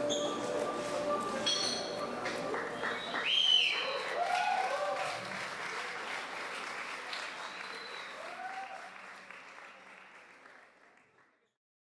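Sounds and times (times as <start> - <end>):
small audience applauding: 2.2 - 11.5.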